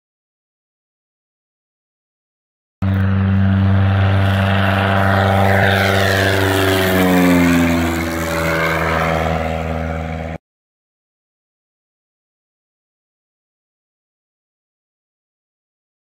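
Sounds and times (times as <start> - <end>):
propeller airplane flying past: 2.8 - 10.4.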